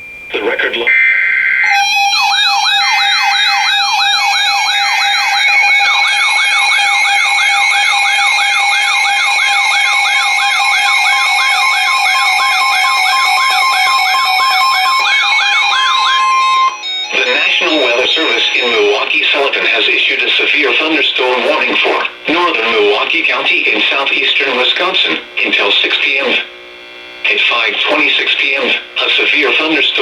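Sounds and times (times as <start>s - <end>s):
steady electronic tones: 0.0s - 30.0s
electronic alert siren sweeping: 0.9s - 22.0s.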